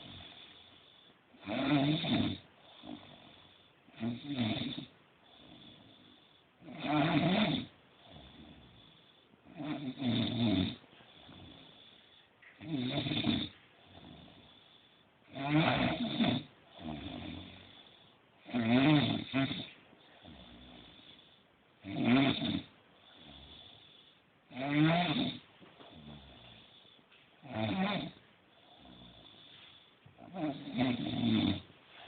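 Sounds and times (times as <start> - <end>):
soft breathing: 0.0 - 1.4, 4.8 - 6.6, 7.7 - 9.5, 10.7 - 12.7, 13.3 - 15.3, 16.0 - 18.4, 19.6 - 21.8, 22.7 - 32.0
person snoring: 0.0 - 31.7.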